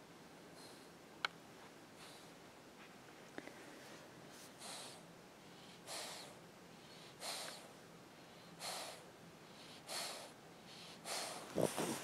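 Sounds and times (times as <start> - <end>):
puppy breathing noisily: 4.5 - 7.7, 8.3 - 12.0.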